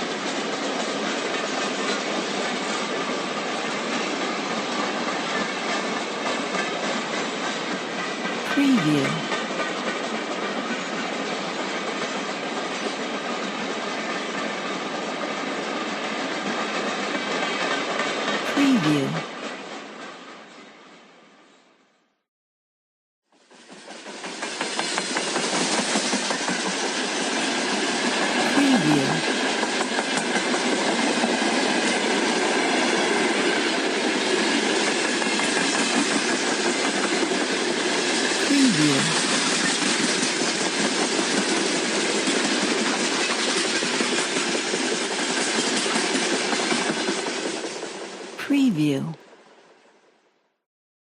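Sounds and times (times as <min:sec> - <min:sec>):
train wheels on rails: 0:00.0 - 0:08.4, 0:09.5 - 0:18.4, 0:23.4 - 0:28.3, 0:39.3 - 0:48.3.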